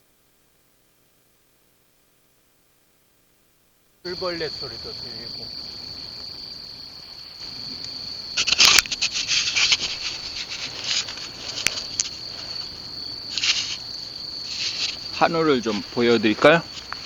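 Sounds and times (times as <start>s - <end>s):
crickets trilling: 4.0s - 17.0s
loud rustling crackle: 4.1s - 17.0s.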